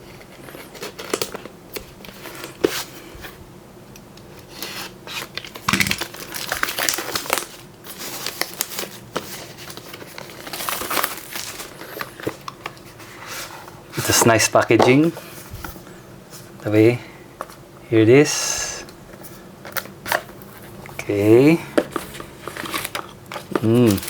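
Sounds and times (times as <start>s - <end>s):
packaging crinkling and rustling: 0.2s - 2.9s, 4.5s - 13.5s, 21.8s - 24.0s.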